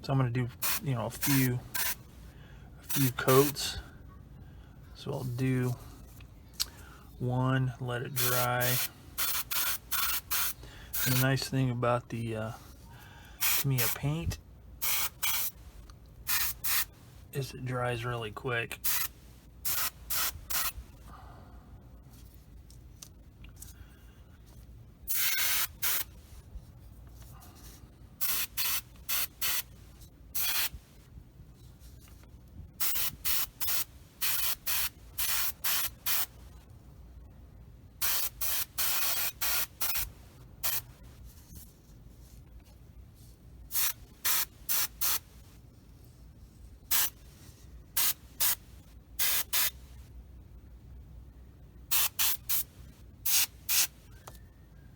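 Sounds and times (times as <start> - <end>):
airbrush spraying paint: 0.6 - 2.0, 8.2 - 11.4, 13.4 - 14.0, 14.8 - 15.6, 16.3 - 16.9, 18.8 - 20.8, 25.1 - 26.2, 28.2 - 29.8, 30.4 - 30.8, 32.8 - 36.4, 38.0 - 40.9, 43.7 - 45.3, 46.9 - 47.2, 48.0 - 49.7, 51.9 - 53.9.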